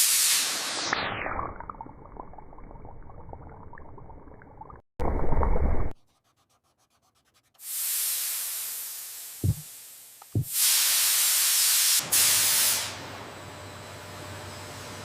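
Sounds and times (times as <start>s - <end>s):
loud spray-like hissing: 0.0s - 0.9s, 7.6s - 13.0s
dull thumps: 9.4s - 9.6s, 10.2s - 10.5s.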